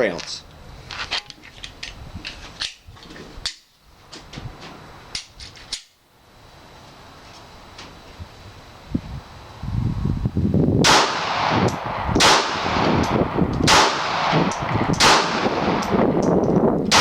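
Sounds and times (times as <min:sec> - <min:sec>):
pistol shots: 0:10.8 - 0:16.1
fainter sharp cracks: 0:10.9 - 0:17.0.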